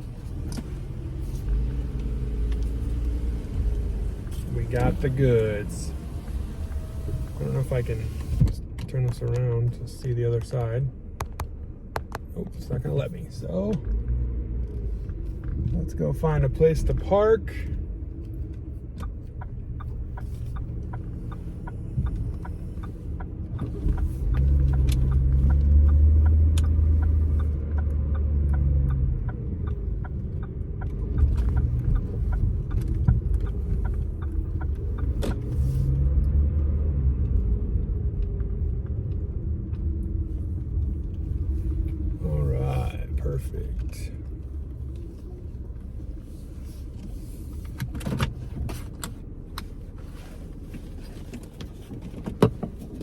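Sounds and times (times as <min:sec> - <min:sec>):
car engine and road rumble: 0:00.0 - 0:53.0
faint regular ticking: 0:17.1 - 0:35.6.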